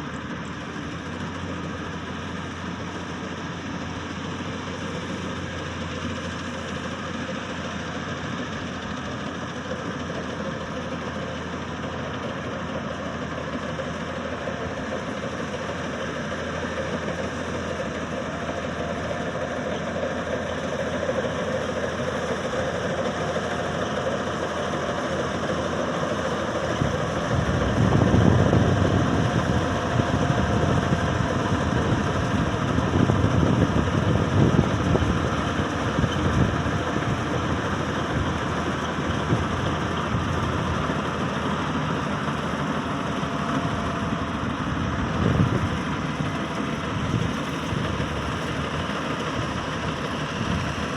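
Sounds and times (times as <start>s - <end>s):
combine harvester engine running: 0.0s - 50.9s
heavy low rumble: 26.6s - 40.8s.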